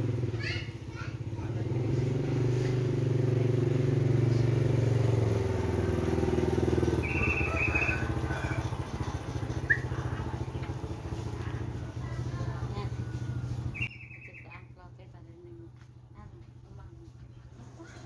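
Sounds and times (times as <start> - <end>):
vehicle engine running: 0.0 - 18.0
rising chirp: 6.9 - 8.6, 13.7 - 14.5
high warbling bird call: 6.9 - 8.7, 13.7 - 14.7.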